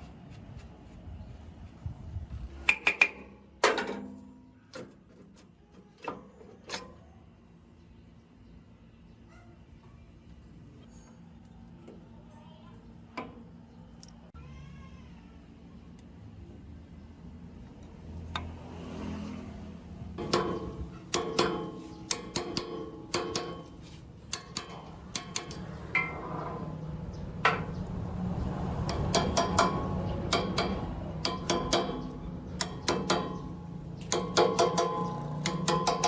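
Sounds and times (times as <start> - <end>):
metallic taps and clicks: 2.6 - 3.3, 20.2 - 26.2, 28.8 - 36.0.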